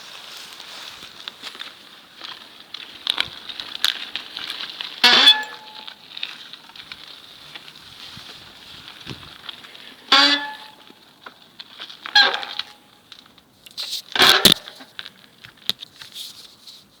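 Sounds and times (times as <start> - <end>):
bicycle disc brakes squealing: 5.0 - 5.9, 10.1 - 10.8, 12.1 - 12.9, 13.8 - 14.8.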